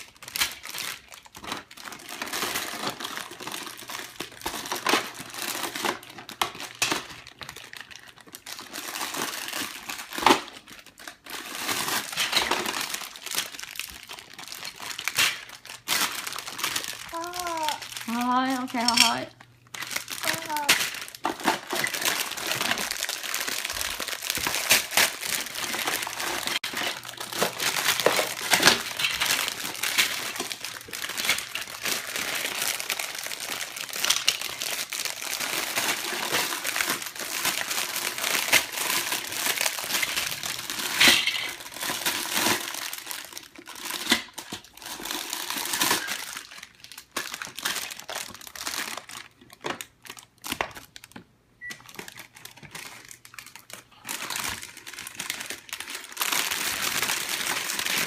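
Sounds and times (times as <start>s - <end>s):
plastic bag crinkling: 0.0s - 58.0s.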